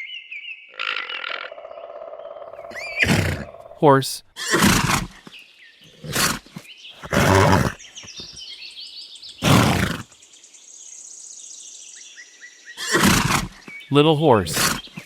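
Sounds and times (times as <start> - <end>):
birds chirping: 0.0 - 15.0
horse making rough vocal bursts: 2.7 - 5.2, 5.9 - 8.3, 9.4 - 10.1, 12.8 - 15.0.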